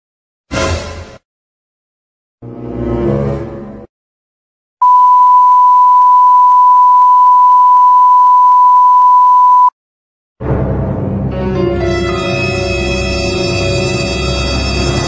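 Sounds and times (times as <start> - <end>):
music: 0.5 - 1.2, 2.4 - 3.9, 10.4 - 15.0
censor bleep tone: 4.8 - 9.8.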